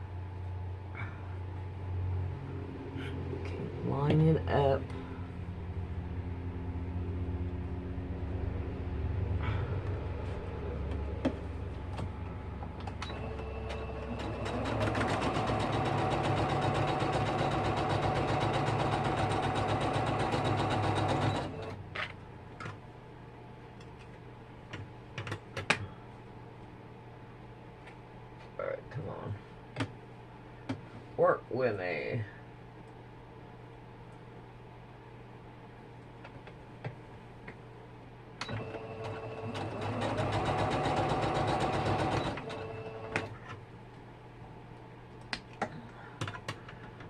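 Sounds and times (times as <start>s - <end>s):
electric sewing machine stitching: 13.0s - 21.8s, 38.5s - 43.3s.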